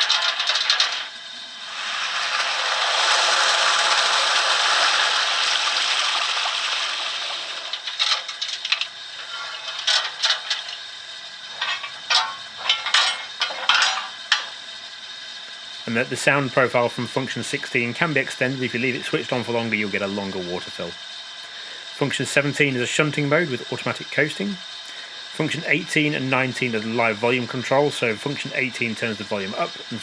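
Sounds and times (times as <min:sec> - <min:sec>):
metallic clanks and clicks: 0:00.0 - 0:01.2, 0:07.7 - 0:10.8, 0:11.5 - 0:14.6.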